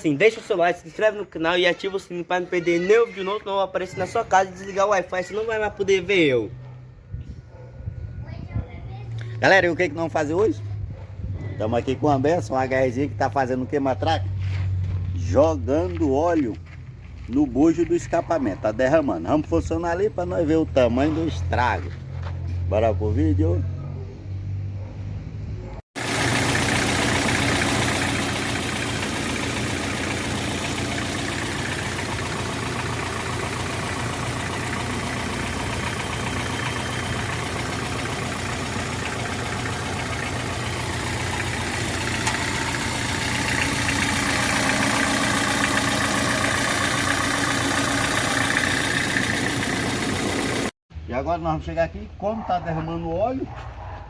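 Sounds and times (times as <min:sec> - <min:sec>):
diesel truck engine idling: 0:26.0 - 0:50.7.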